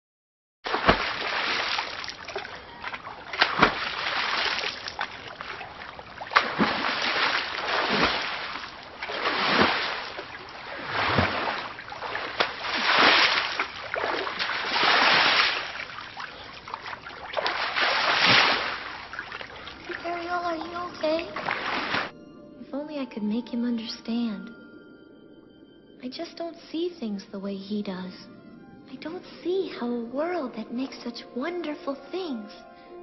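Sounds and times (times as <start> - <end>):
water splashing and sloshing: 0.6 - 22.2.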